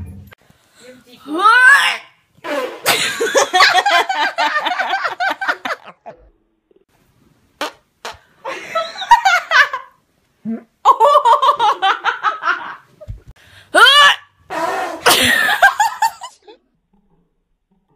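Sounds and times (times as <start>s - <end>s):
fart sounds: 2.4s - 3.0s, 7.6s - 8.3s
girls laughing: 2.8s - 6.3s, 8.5s - 10.0s, 10.8s - 13.1s, 15.1s - 16.5s.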